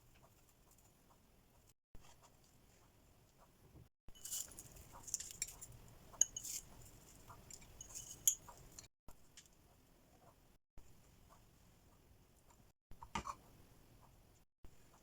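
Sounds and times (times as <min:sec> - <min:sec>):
small kitchen clinks: 0:04.1 - 0:08.9
scraping rustles: 0:04.2 - 0:05.8.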